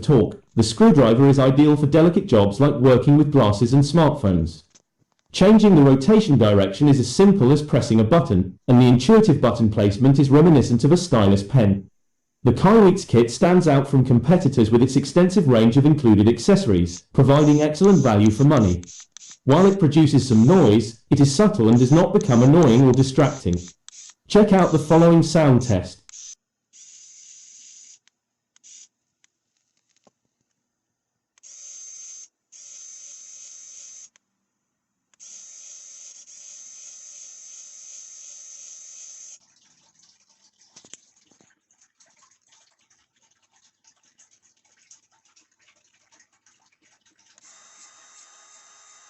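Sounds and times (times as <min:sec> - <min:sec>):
electric screwdriver motor whine: 0:23.6 - 0:24.2, 0:26.1 - 0:28.9, 0:31.4 - 0:34.2, 0:35.2 - 0:39.4, 0:47.4 - 0:49.0.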